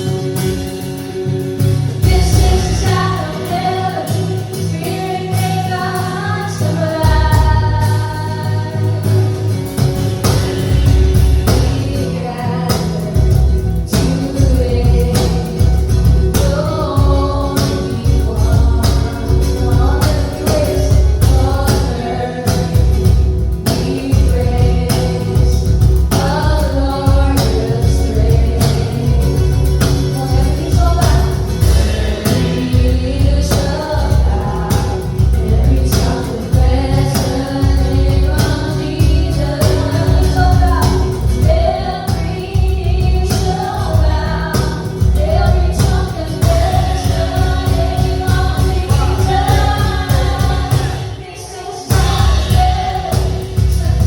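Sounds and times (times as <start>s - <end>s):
heavy bass: 0.0s - 51.3s, 51.9s - 54.0s
lead and backing vocals: 0.0s - 54.0s
drum beat: 22.6s - 51.2s, 51.9s - 54.0s.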